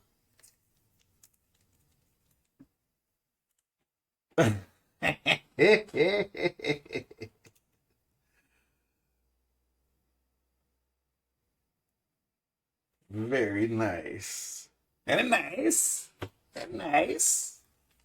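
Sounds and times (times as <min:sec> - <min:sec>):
person making short vocal sounds: 0:04.4 - 0:07.3.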